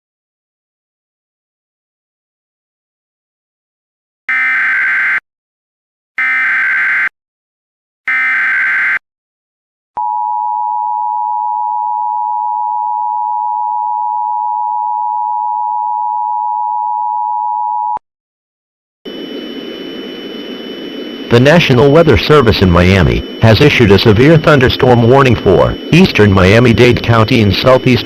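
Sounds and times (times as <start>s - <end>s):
two-tone attention signal: 4.3s - 5.2s, 8.1s - 9.0s, 21.3s - 28.0s
data bursts: 8.1s - 9.0s, 19.1s - 28.0s.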